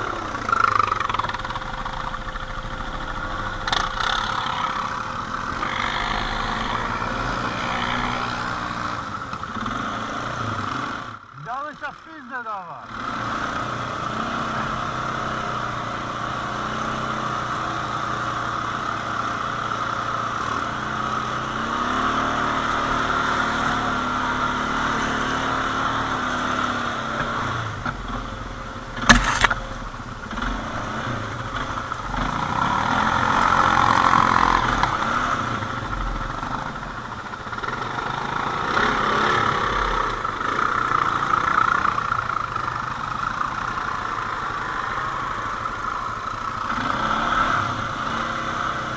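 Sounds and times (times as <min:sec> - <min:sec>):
atv engine running: 0:00.0 - 0:48.9
sharp knock: 0:29.1 - 0:29.6.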